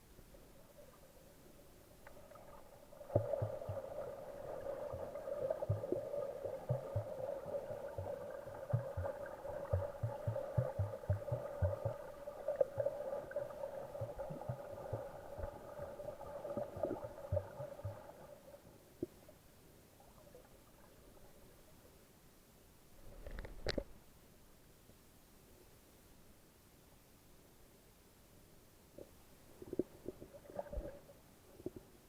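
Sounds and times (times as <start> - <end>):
muffled underwater hum: 3.2 - 18.1.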